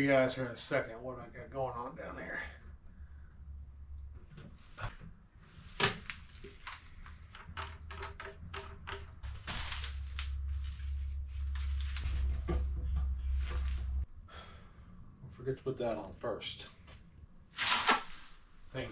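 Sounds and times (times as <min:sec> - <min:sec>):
low rumble: 0:00.8 - 0:04.9, 0:09.1 - 0:16.3
clicks and knocks of pipe parts: 0:05.7 - 0:10.8, 0:11.6 - 0:13.8.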